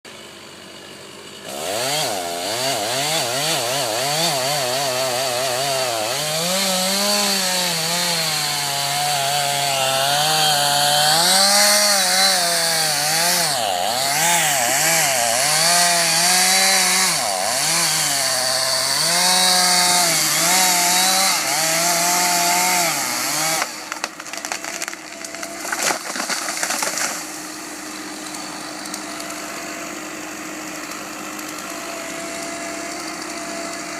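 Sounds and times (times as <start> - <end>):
chainsaw revving: 0.1 - 33.9
cracks and knocks: 23.9 - 27.2.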